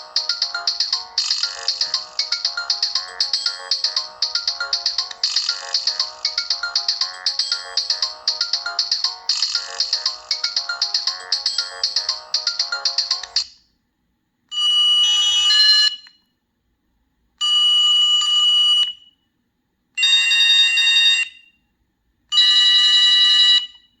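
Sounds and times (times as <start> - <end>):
phone ringing tones: 0.0 - 13.5, 15.0 - 15.9
phone ringtone tune: 0.0 - 13.5, 15.0 - 15.8.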